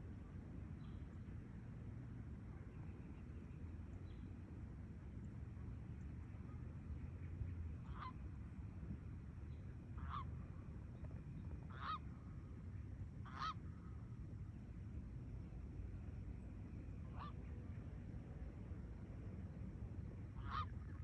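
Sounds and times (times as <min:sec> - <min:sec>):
low background rumble: 0:00.0 - 0:21.0
geese honking: 0:11.7 - 0:12.0, 0:13.3 - 0:13.6, 0:20.4 - 0:20.7.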